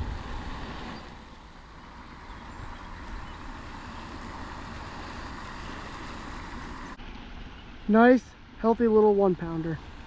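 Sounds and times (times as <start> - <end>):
wind buffeting microphone: 0.0 - 1.2
constant hiss: 0.0 - 10.0.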